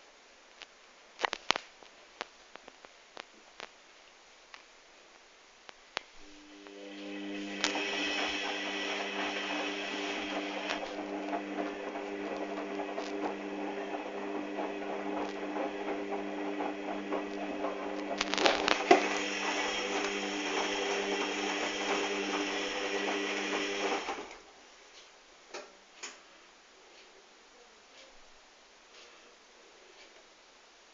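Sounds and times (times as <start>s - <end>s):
washing machine humming: 6.2s - 24.5s.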